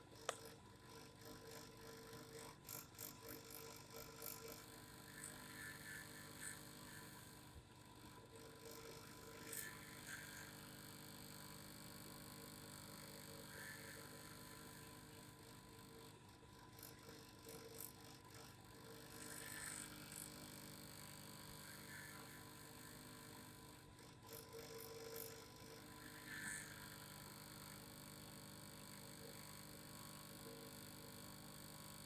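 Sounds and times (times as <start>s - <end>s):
mechanical vibration hum: 0.0s - 32.0s.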